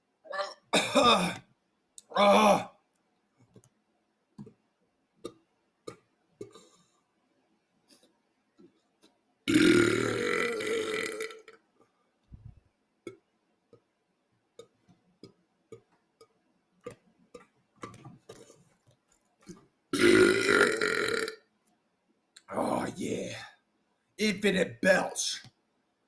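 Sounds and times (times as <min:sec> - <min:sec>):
man belching loudly: 0:02.0 - 0:02.7, 0:09.5 - 0:11.5, 0:20.0 - 0:21.4
faint clicks and mouth noises: 0:04.4 - 0:06.9, 0:07.9 - 0:09.2, 0:13.0 - 0:19.7.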